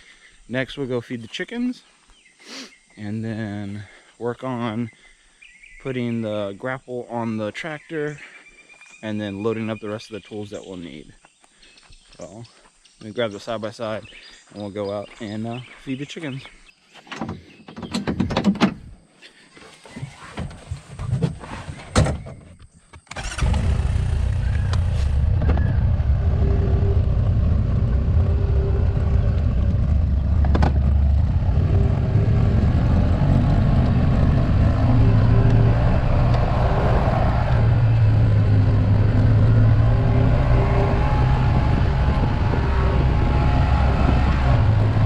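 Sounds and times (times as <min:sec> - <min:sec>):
utility vehicle engine running: 0:23.1 - 0:45.0.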